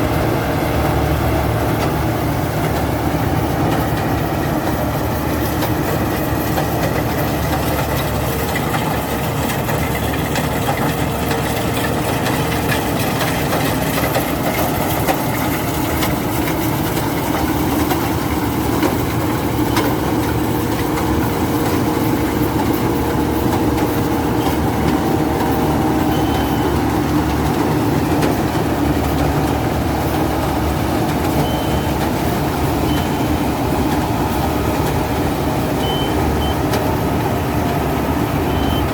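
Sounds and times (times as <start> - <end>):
combine harvester droning: 0.0 - 38.9.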